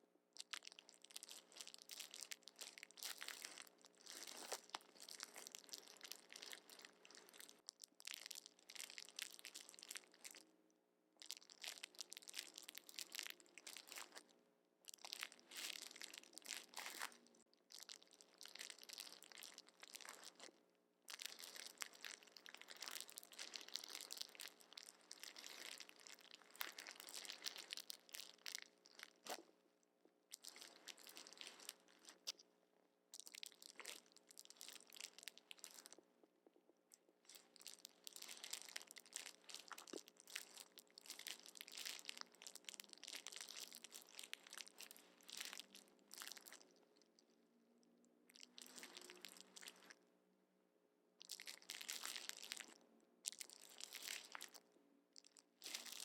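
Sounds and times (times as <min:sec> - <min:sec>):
plastic packaging crinkling: 0:00.5 - 0:07.6, 0:21.1 - 0:29.4, 0:37.3 - 0:46.6.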